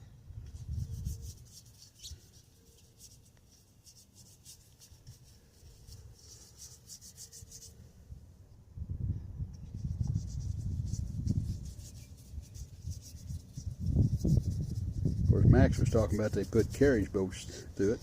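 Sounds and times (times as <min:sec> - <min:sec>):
brush scratchy strokes: 0:00.4 - 0:08.1, 0:09.6 - 0:18.0.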